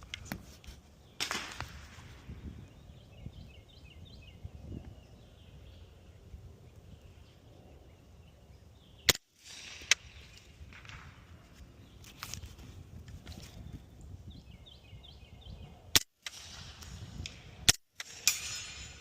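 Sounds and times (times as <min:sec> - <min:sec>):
suppressed gunshots: 0:01.2 - 0:01.8.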